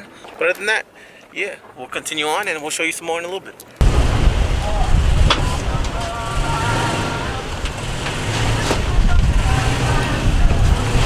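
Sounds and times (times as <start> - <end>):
truck engine running: 3.8 - 11.0
truck knocks and rattles: 3.8 - 11.0.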